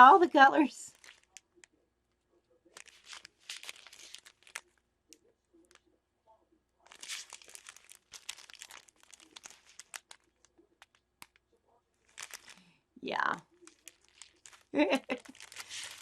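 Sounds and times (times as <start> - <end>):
plastic packaging crinkling: 0.9 - 1.7, 2.6 - 4.8, 6.8 - 11.4, 12.0 - 12.7, 13.5 - 16.0.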